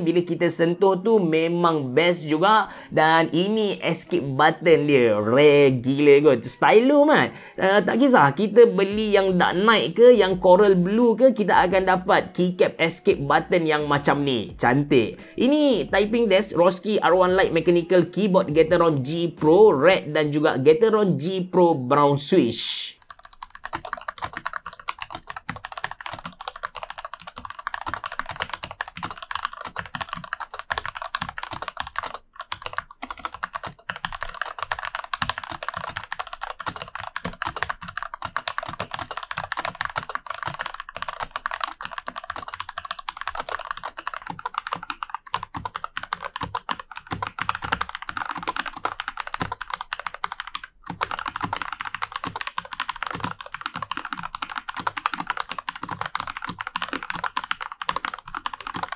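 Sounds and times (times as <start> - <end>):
mechanical keyboard typing: 23.0 - 58.9.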